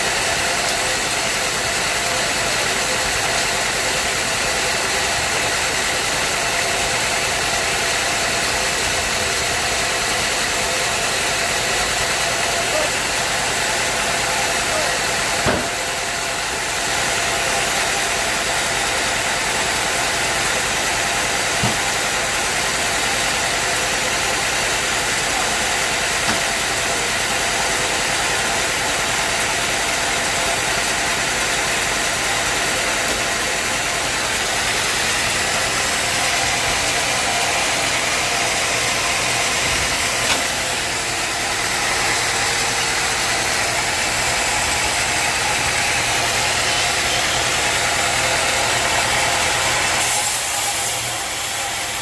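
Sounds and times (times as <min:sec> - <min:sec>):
sharp knocks: 0:15.4 - 0:15.8, 0:21.6 - 0:21.8
engine humming: 0:25.1 - 0:51.2
hiss: 0:45.1 - 0:52.0.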